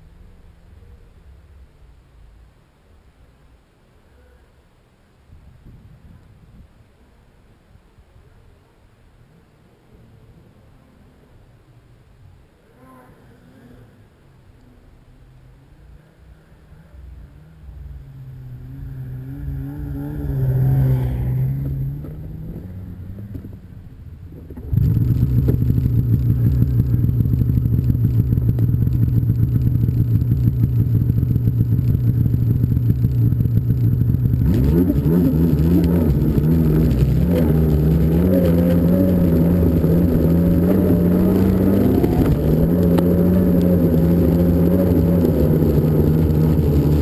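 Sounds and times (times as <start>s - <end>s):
snowmobile engine: 16.8s - 47.0s.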